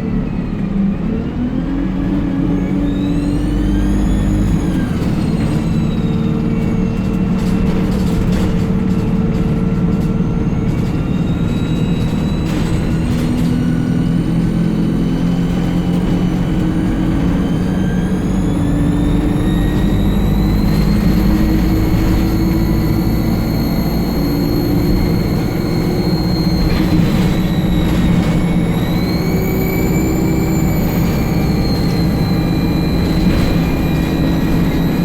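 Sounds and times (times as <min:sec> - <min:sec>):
bus diesel engine under load: 0:00.0 - 0:35.0
turbocharger whistle: 0:10.6 - 0:35.0.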